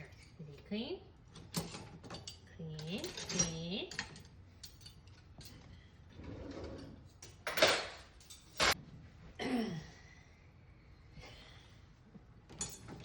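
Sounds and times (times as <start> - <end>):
dishwasher rack scraping slide: 6.2 - 7.0.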